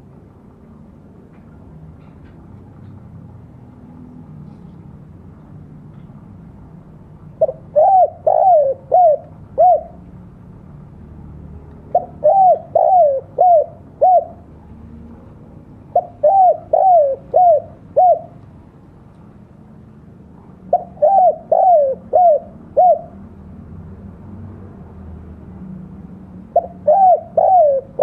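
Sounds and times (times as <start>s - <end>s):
dove cooing: 7.4s - 10.0s, 11.9s - 14.6s, 15.9s - 18.4s, 20.7s - 23.2s, 26.5s - 28.0s.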